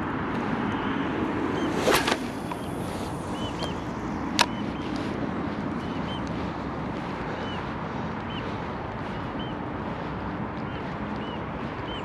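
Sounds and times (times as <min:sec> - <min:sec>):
fishing rod swishing: 0:01.6 - 0:05.2.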